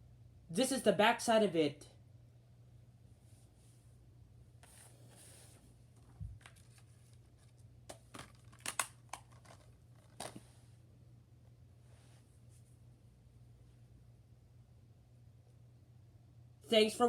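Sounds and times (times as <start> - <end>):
faint paper rustle: 4.6 - 10.7
plastic clicks and snaps: 7.9 - 10.4.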